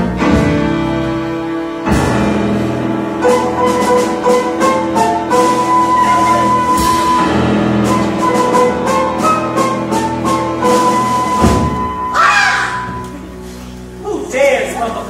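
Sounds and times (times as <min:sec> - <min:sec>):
pit orchestra playing: 0:00.0 - 0:14.0
drum strokes: 0:01.9 - 0:13.4.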